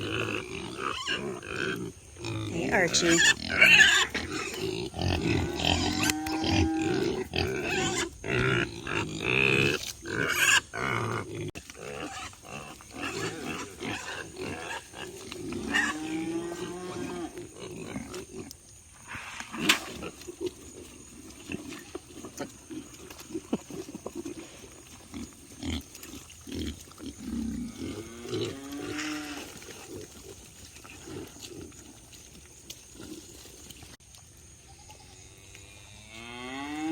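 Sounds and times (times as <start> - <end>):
pigs squealing: 0.0 - 20.6
pigs grunting: 0.0 - 34.0.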